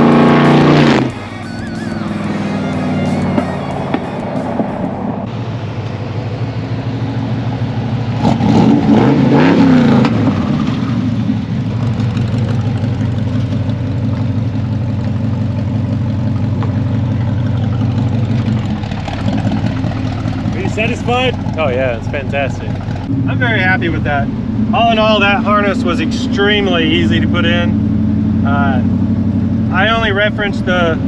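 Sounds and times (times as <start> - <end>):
truck engine revving: 0.0 - 31.0.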